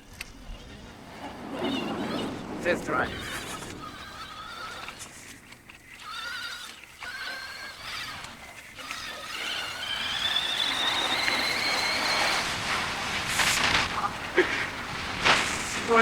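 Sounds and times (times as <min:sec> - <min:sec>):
rushing wind: 0:00.0 - 0:06.1, 0:09.4 - 0:16.0
tyre noise: 0:00.0 - 0:16.0
electric motor whining: 0:01.6 - 0:14.3
burst of noise: 0:10.1 - 0:16.0.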